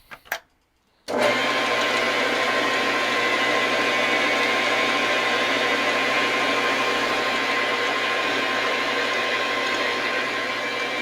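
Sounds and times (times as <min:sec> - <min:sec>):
metal lathe whirring: 0:01.1 - 0:11.0.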